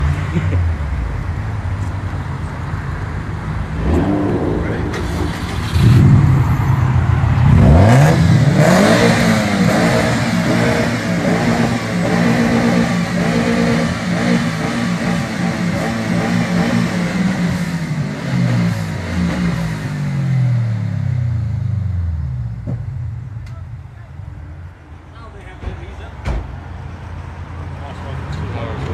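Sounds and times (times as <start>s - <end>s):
car engine revving: 3.0s - 24.7s.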